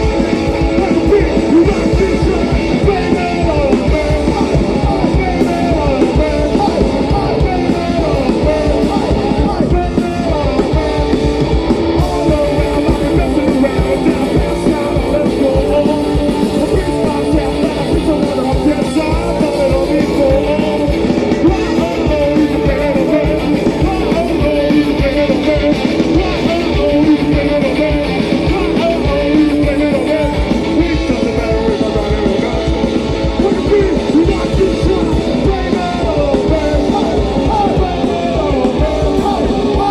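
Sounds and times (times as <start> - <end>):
drums: 0.0 - 39.9
electric guitar: 0.0 - 39.9
shouted singing: 0.0 - 39.9.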